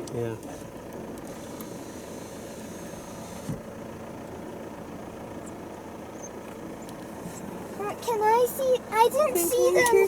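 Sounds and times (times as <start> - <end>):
car engine and cabin hum: 0.0 - 10.0.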